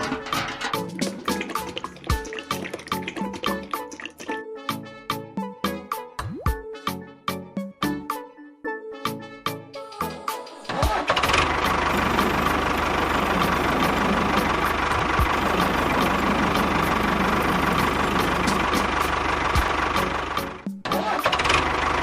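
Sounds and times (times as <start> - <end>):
small engine running: 10.8 - 22.0.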